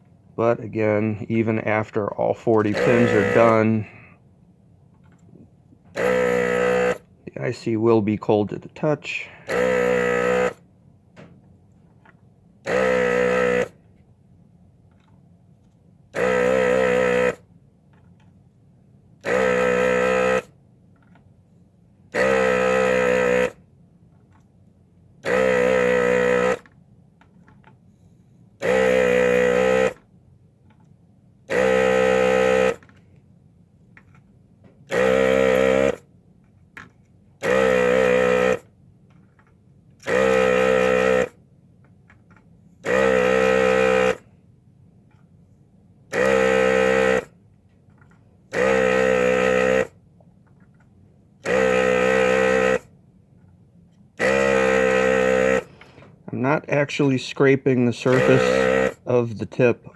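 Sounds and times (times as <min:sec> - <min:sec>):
vacuum pump buzzing: 0:00.0 - 0:15.1, 0:16.0 - 0:21.2, 0:21.9 - 0:44.8, 0:45.8 - 0:53.3, 0:53.9 - 0:59.9.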